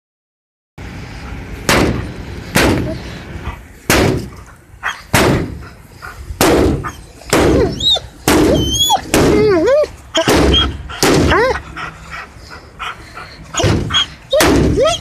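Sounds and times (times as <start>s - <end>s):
loud sharp bangs: 1.6s - 3.0s, 3.9s - 4.4s, 5.1s - 5.6s, 6.4s - 9.4s, 10.2s - 11.4s, 13.6s - 14.8s.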